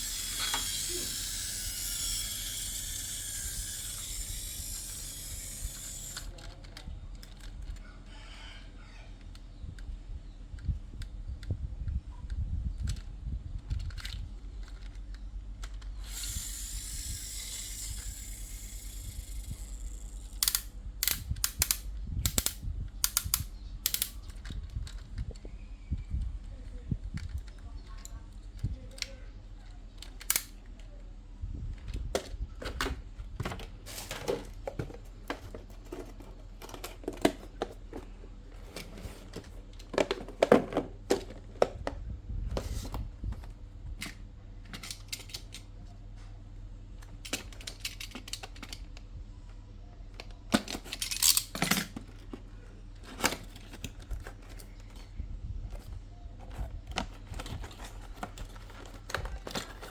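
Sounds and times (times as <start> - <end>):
packaging clicks and taps: 31.8 - 45.6, 55.7 - 59.9
plastic and cardboard packaging rustling: 31.9 - 43.6, 51.9 - 59.9.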